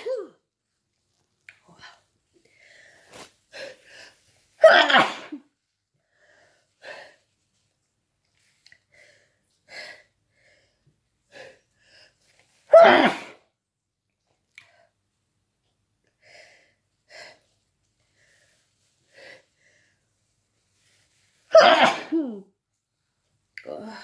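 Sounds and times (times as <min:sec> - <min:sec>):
person sneezing loudly: 0:00.0 - 0:00.4, 0:04.6 - 0:05.4, 0:12.7 - 0:13.4, 0:21.5 - 0:22.4.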